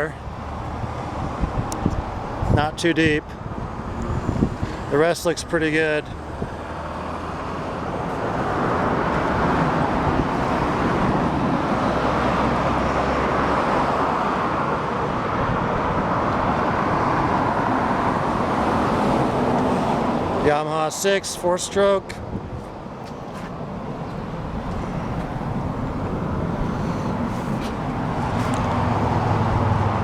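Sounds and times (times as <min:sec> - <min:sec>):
road traffic rushing: 0:00.0 - 0:30.0.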